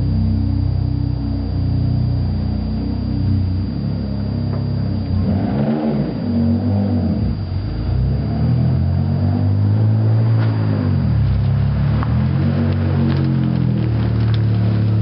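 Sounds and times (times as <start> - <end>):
car engine revving: 0.0 - 15.0.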